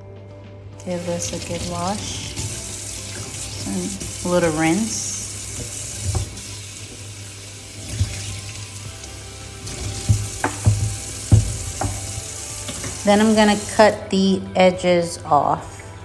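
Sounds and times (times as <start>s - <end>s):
tap water running: 0.8s - 14.4s
handling knocks: 9.7s - 13.0s.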